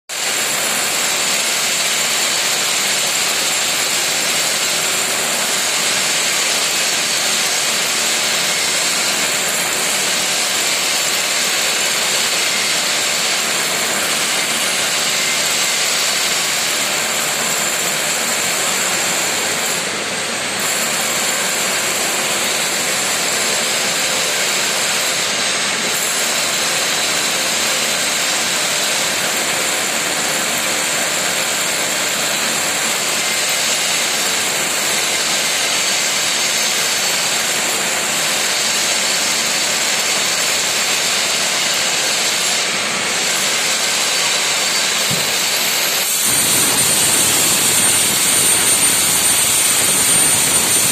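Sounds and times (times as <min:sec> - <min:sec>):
plasma torch hissing: 0:44.4 - 0:50.9.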